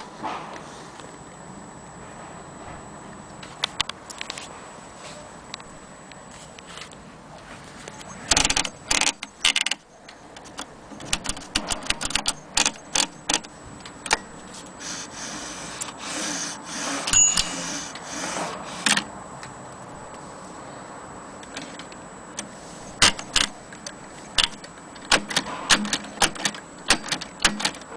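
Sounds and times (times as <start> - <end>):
typewriter clacking: 8.3 - 9.8, 11.0 - 13.5, 23.0 - 23.5, 24.4 - 27.9.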